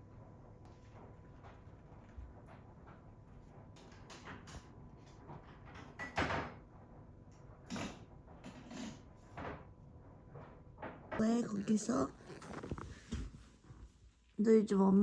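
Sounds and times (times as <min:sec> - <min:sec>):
puppy paws thumping and scuffing: 0:11.2 - 0:14.1.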